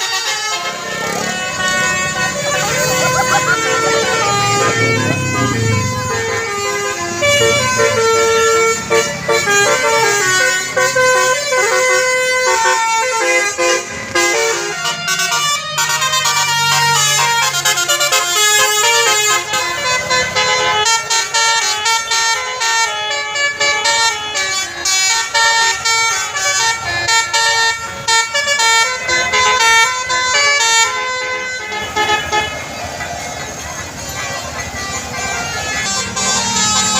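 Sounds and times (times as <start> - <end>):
bus air horn melody: 0.0 - 36.9.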